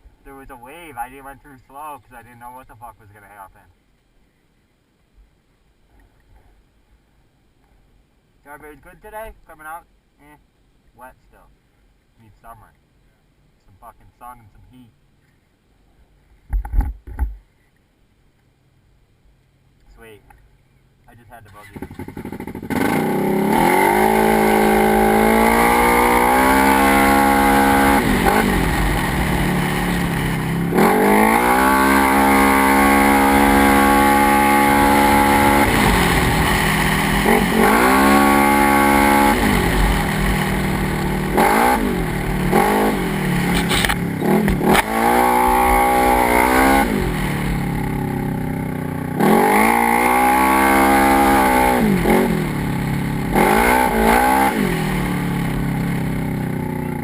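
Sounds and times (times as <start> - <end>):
engine revving: 21.7 - 57.0.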